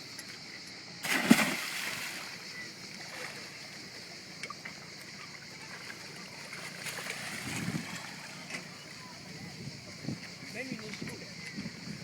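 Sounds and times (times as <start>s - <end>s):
water slosh: 1.0s - 3.8s, 5.8s - 8.6s
water lapping against boat: 1.0s - 11.9s.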